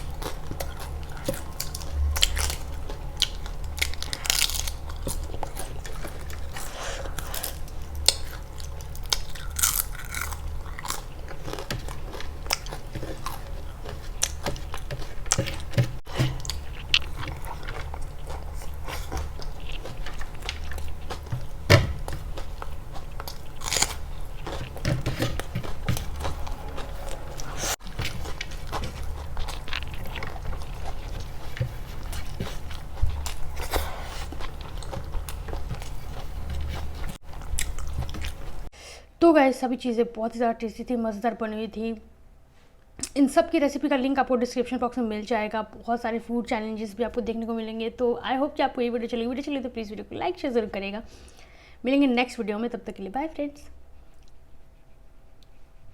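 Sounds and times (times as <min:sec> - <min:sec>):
sharp food crunches: 0:00.0 - 0:38.6
chewing and biting: 0:00.0 - 0:38.7.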